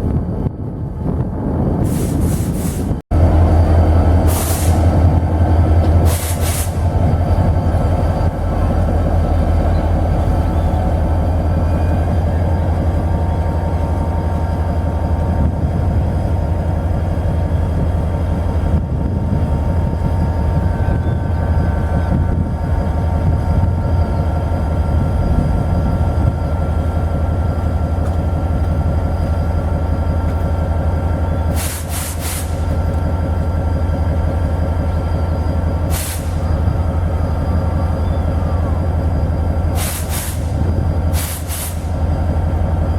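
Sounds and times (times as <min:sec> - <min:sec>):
diesel locomotive engine drone: 0:00.0 - 0:42.9
air hissing: 0:04.2 - 0:05.0, 0:06.0 - 0:07.1, 0:31.5 - 0:32.8, 0:35.9 - 0:36.5, 0:39.8 - 0:42.0.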